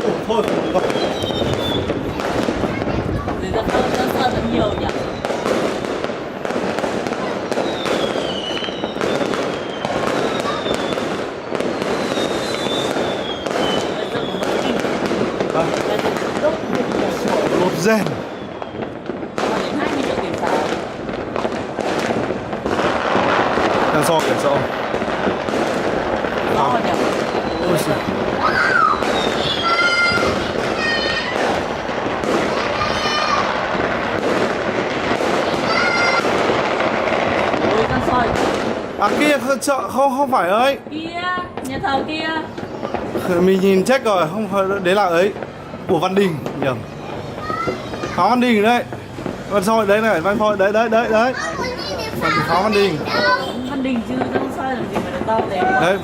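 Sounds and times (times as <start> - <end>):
fireworks bangs and crackling: 0.0 - 56.0
whistling firework shells: 0.4 - 2.5, 3.8 - 5.9, 7.4 - 20.7, 24.2 - 37.5.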